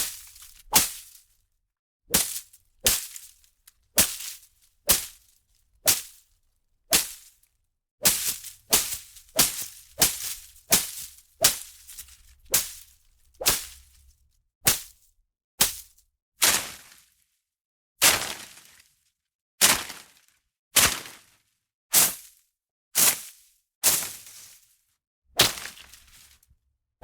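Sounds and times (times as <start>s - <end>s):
swishing strikes on foliage: 0.0s - 1.2s, 2.1s - 3.4s, 4.0s - 5.3s, 5.9s - 6.2s, 6.9s - 7.3s, 8.0s - 13.9s, 14.7s - 15.0s, 15.6s - 15.9s, 23.9s - 24.4s, 25.4s - 26.3s.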